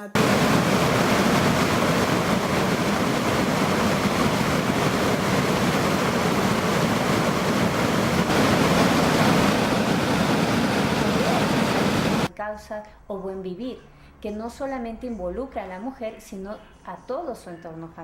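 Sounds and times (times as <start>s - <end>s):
loud steady rushing noise: 0.0s - 12.3s.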